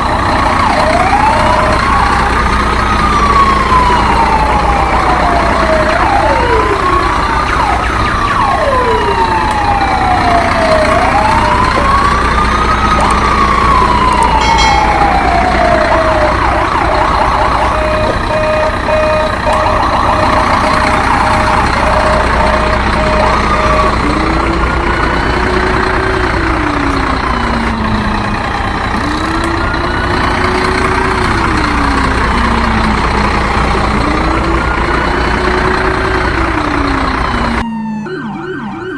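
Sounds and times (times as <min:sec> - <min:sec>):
lower-pitched siren: 0:00.0 - 0:38.9
siren wails: 0:00.0 - 0:38.9
evenly spaced beeps: 0:10.2 - 0:28.1.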